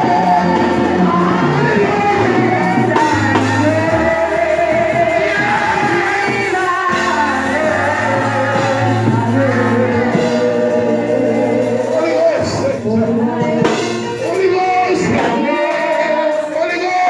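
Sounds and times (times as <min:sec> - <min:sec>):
band with bass line: 0:00.0 - 0:17.0
voices singing together: 0:00.0 - 0:17.0.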